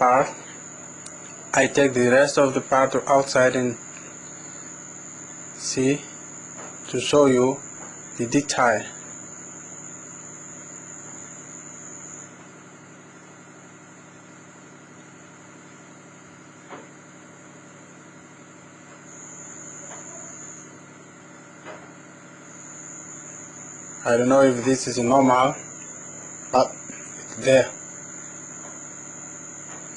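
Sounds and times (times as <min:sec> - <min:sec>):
high thin whine: 0:00.0 - 0:12.3, 0:22.4 - 0:29.9
steady background hum: 0:00.0 - 0:29.9.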